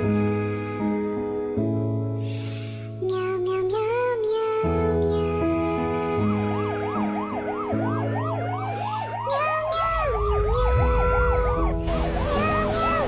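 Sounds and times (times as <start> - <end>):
siren-like yelping tone: 6.2 - 13.0
long rising glides: 6.4 - 13.0.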